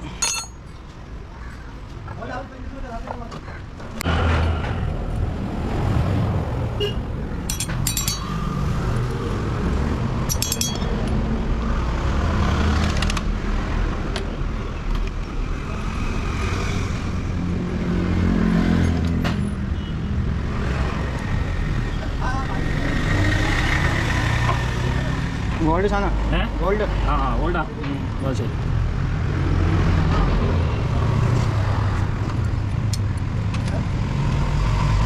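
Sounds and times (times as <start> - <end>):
metallic clinks: 0.2 - 0.7, 7.5 - 9.0, 10.3 - 11.2.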